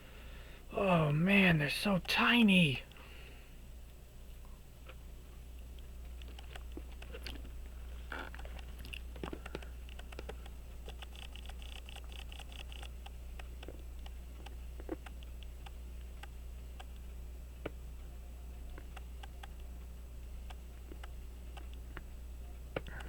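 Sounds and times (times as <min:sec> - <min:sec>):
steady low hum: 0:00.0 - 0:23.0
faint high ticks: 0:08.2 - 0:17.8.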